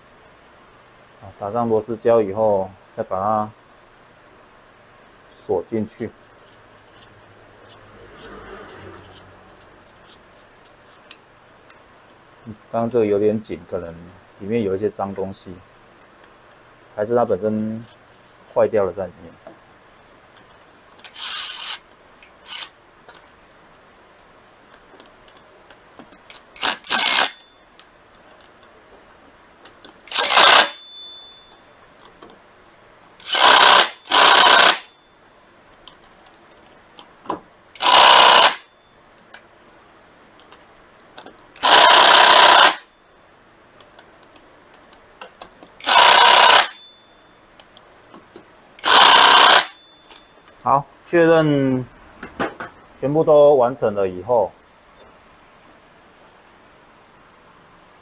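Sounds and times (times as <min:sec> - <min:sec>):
power driver bursts: 0:26.6 - 0:27.4, 0:30.1 - 0:30.9, 0:33.2 - 0:34.9, 0:37.8 - 0:38.7, 0:41.6 - 0:42.9, 0:45.8 - 0:46.8, 0:48.8 - 0:49.8.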